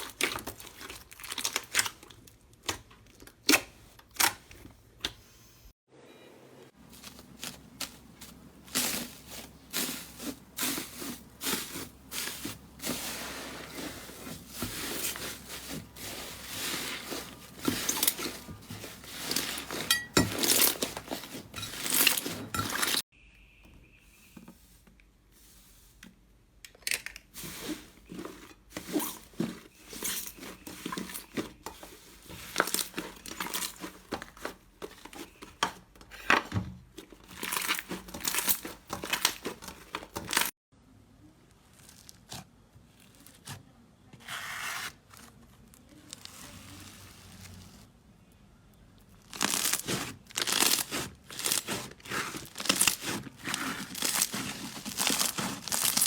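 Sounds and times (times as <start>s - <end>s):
slime crackling and popping: 49.2s - 56.0s.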